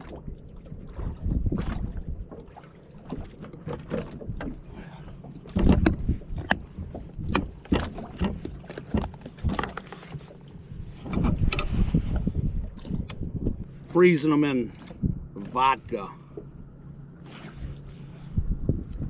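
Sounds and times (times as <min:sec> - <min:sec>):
waves slapping against hull: 0:00.0 - 0:19.0
wind gusts on microphone: 0:00.9 - 0:02.3, 0:05.5 - 0:07.6, 0:10.8 - 0:16.0, 0:17.6 - 0:19.0.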